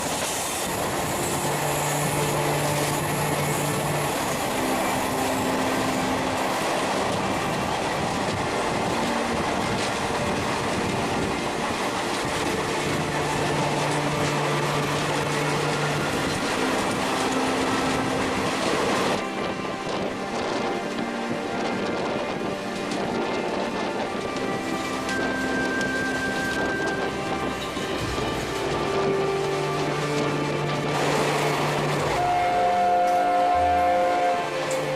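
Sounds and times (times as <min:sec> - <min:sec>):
train wheels rumbling and rattling: 0:00.0 - 0:34.9.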